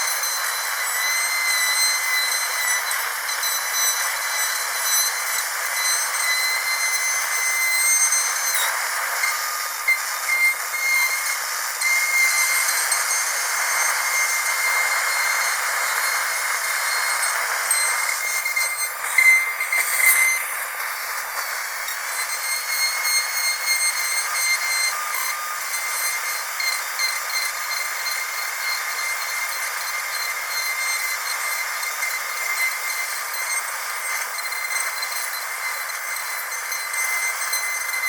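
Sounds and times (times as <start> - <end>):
dental drill whining: 0.0 - 38.0
hiss: 0.0 - 38.0.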